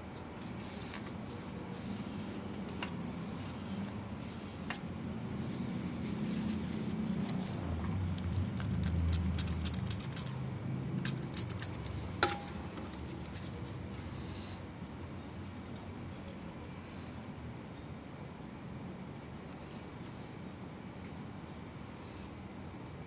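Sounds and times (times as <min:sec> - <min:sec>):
low steady hum: 0:00.0 - 0:23.0.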